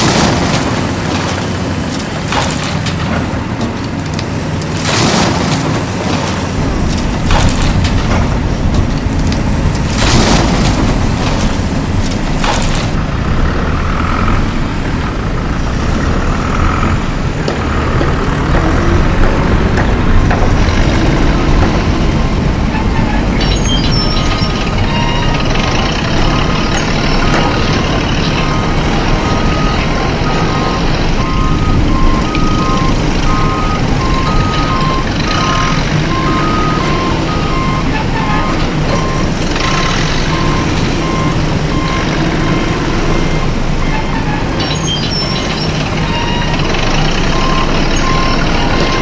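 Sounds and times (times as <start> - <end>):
truck engine rumbling: 0.0 - 49.0
two-tone reversing alarm: 17.8 - 49.0.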